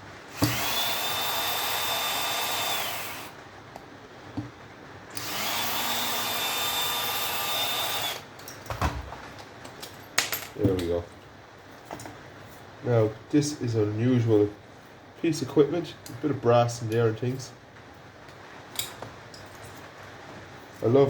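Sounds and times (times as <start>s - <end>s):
power drill motor whine: 0.3s - 3.3s, 5.1s - 8.2s.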